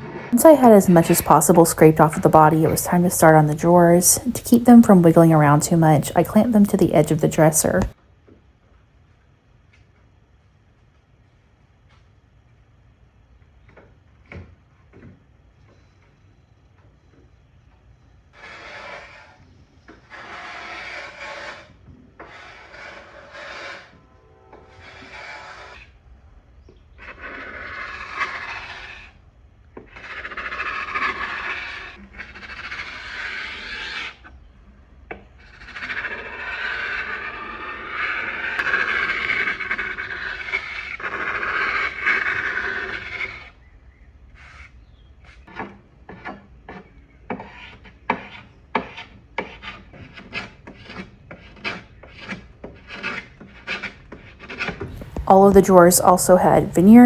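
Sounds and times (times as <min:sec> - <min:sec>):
paint scraper rasping on wood: 0:18.4 - 0:24.0, 0:24.6 - 0:26.0, 0:27.0 - 0:29.2, 0:29.8 - 0:34.3, 0:35.4 - 0:43.6, 0:44.4 - 0:55.2.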